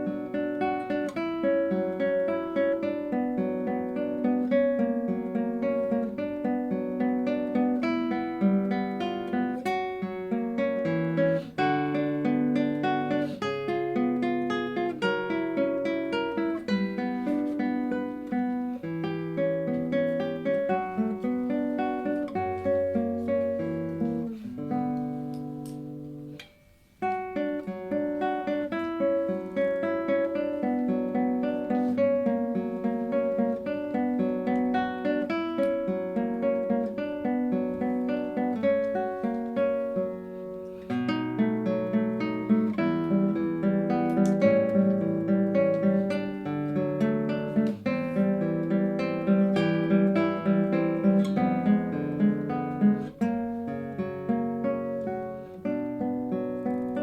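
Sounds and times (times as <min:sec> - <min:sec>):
classical guitar fingerpicking: 0:00.0 - 0:57.0.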